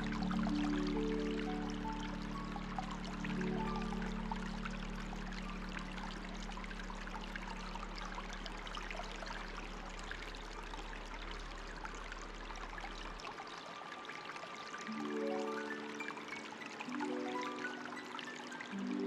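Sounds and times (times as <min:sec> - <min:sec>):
low steady hum: 0:00.0 - 0:13.2
water trickling and pouring: 0:00.0 - 0:19.0.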